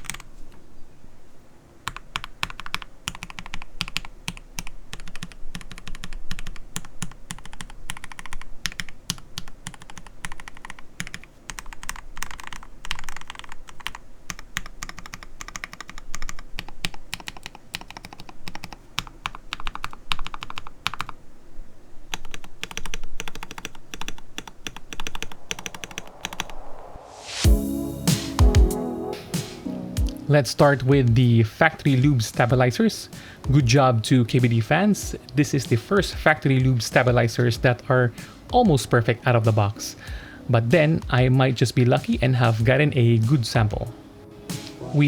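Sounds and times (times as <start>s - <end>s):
mechanical keyboard typing: 0.0s - 0.3s, 1.8s - 21.2s, 22.1s - 26.5s.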